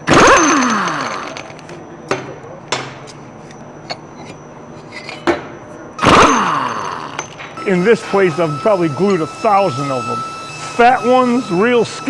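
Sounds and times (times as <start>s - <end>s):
mechanical sound falling in pitch: 6.0s - 7.8s.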